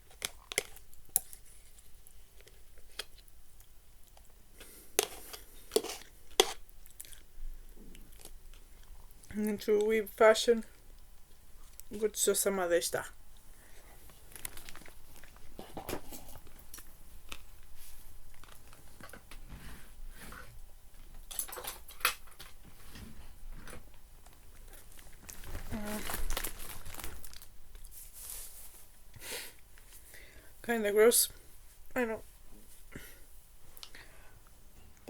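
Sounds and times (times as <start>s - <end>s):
food wrapper crinkling: 0.0s - 3.3s, 7.9s - 10.0s, 14.1s - 19.3s, 23.6s - 28.8s
chewing and smacking: 6.7s - 9.3s.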